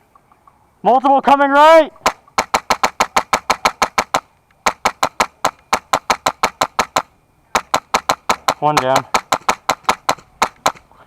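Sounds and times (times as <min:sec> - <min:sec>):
airsoft rifle rapid shots: 0:02.0 - 0:10.8.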